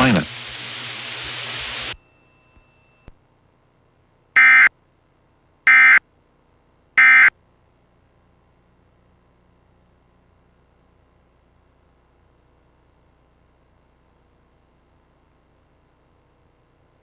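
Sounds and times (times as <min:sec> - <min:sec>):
short buzzy data tones: 0:04.4 - 0:04.7, 0:07.0 - 0:07.3.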